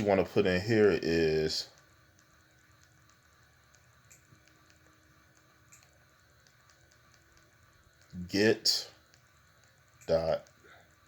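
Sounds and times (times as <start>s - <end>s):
soft ticks: 1.7s - 8.2s.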